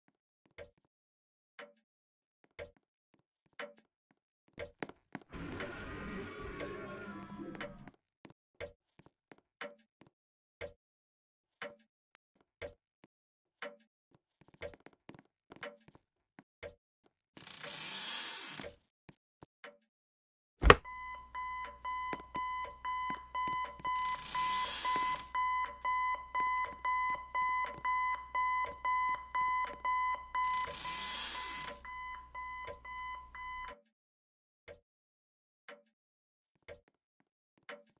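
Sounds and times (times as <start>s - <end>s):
sharp click: 20.6s - 20.9s
clock ticking: 20.6s - 33.7s
electronic alarm beeping: 20.6s - 33.7s.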